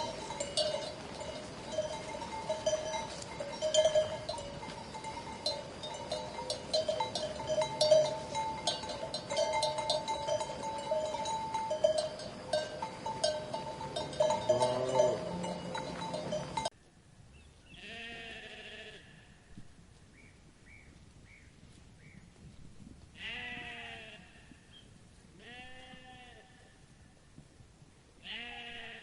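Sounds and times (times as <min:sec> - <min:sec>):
sheep bells clanking: 0:00.0 - 0:16.7
sheep bleating: 0:14.0 - 0:16.7, 0:17.8 - 0:19.2, 0:23.2 - 0:24.5, 0:28.2 - 0:29.0.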